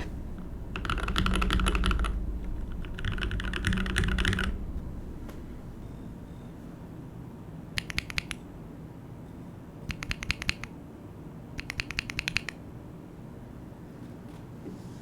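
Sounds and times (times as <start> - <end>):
mechanical keyboard typing: 0.4 - 4.6, 7.8 - 8.4, 9.9 - 10.8, 11.6 - 12.6.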